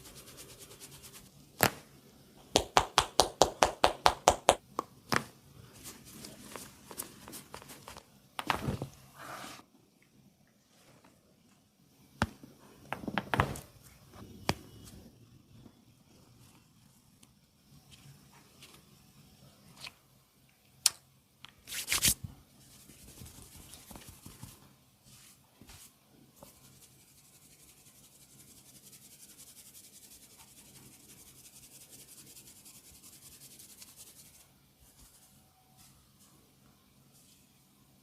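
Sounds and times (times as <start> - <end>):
fingers rubbing through hair: 0.0 - 1.3.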